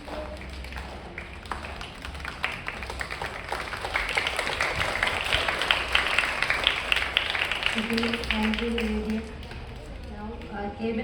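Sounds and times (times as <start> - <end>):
group applauding: 0.0 - 10.5.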